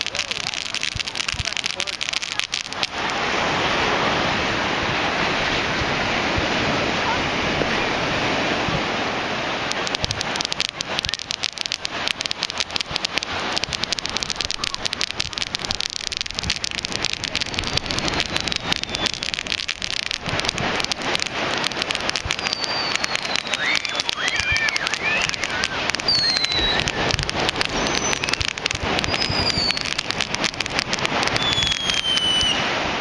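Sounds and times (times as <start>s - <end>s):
fireworks crackling: 0.0s - 33.0s
thin whistling glide: 17.8s - 19.4s, 22.2s - 30.1s, 31.3s - 32.6s.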